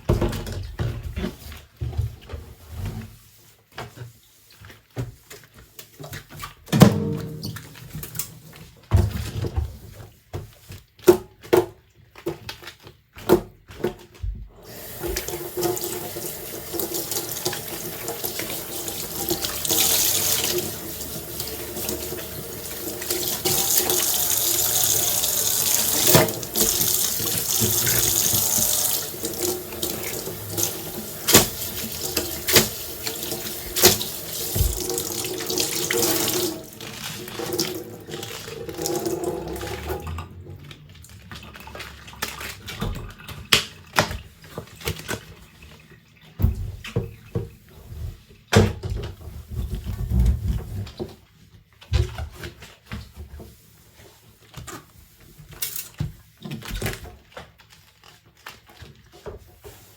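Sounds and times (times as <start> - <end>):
dishes clinking in a sink: 6.7 - 9.6
kitchen tap running: 6.8 - 9.5, 14.5 - 44.3.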